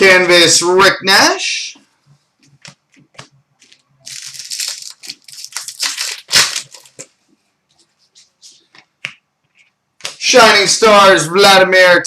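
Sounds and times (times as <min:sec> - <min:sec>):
wrapper being torn and crumpled: 0:03.6 - 0:07.1.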